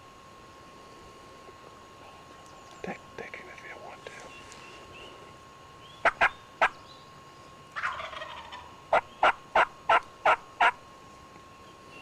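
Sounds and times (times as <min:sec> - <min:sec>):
wild turkey calling: 0:05.8 - 0:07.0, 0:07.8 - 0:10.8.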